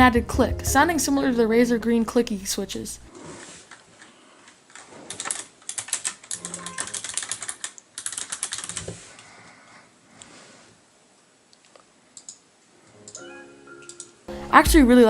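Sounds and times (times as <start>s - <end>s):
clicky keyboard typing: 5.1s - 9.0s, 12.2s - 12.4s, 13.1s - 14.2s.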